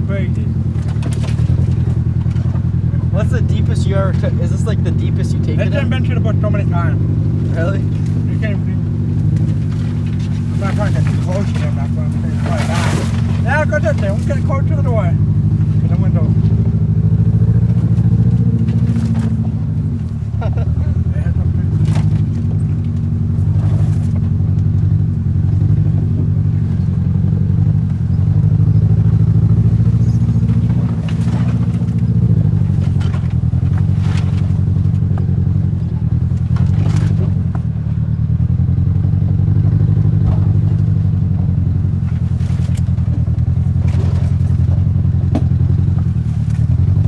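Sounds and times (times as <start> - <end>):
car engine running: 0.0 - 47.0
knocks and scrapes: 0.1 - 2.9, 7.2 - 24.4, 27.8 - 37.7, 41.9 - 47.0.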